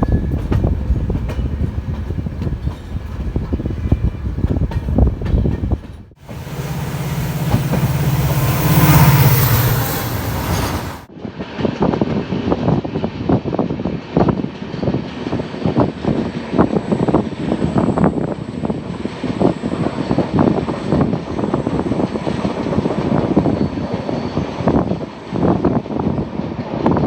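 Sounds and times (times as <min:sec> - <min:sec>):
train rumble pulsing: 0:00.0 - 0:11.1
train hum with hiss: 0:06.2 - 0:11.1.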